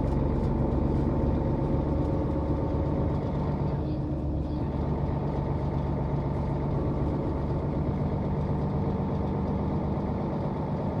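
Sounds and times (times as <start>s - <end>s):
bus engine humming: 0.0s - 11.0s.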